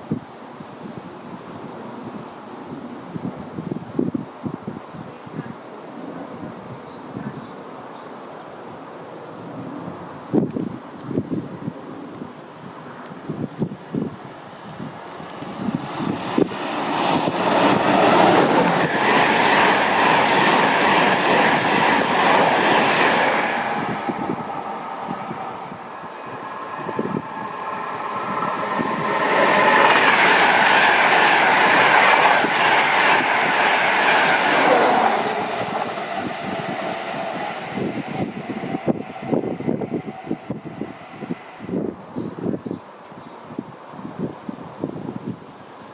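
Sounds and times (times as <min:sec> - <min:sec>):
train wheels rushing on rail: 0:12.5 - 0:42.7
train clattering: 0:15.1 - 0:25.2.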